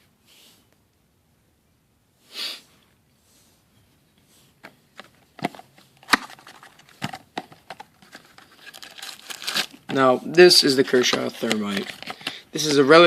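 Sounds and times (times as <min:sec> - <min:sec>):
person sniffing: 0:02.2 - 0:03.6
packaging clicks and knocks: 0:05.0 - 0:10.0, 0:10.8 - 0:12.7.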